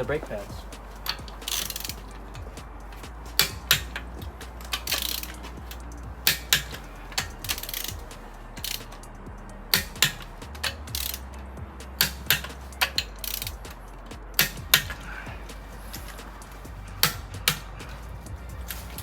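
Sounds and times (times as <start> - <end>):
torque wrench clicking: 0.0 - 19.0.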